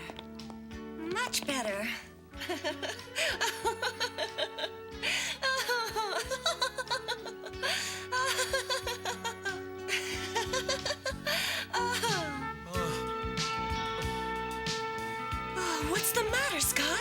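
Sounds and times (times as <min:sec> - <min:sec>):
soundtrack music with held tones: 0:00.0 - 0:17.0
light laughter: 0:02.4 - 0:04.8, 0:05.4 - 0:12.2.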